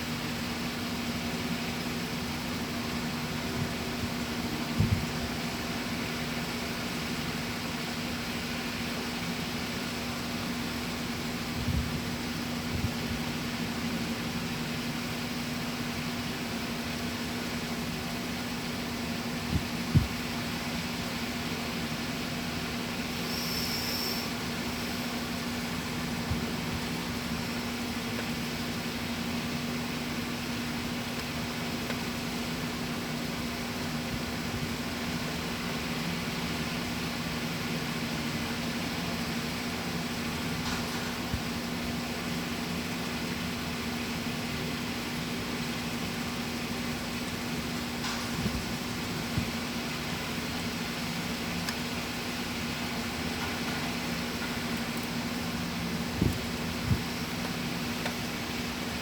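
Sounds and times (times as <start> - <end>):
low machine hum: 0.0 - 59.0
even hiss: 23.1 - 25.0.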